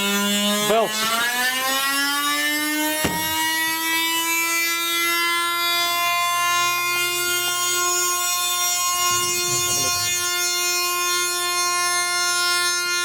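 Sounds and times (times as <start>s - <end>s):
sharp knock: 3.0s - 3.6s
washing machine motor whine: 6.0s - 10.9s.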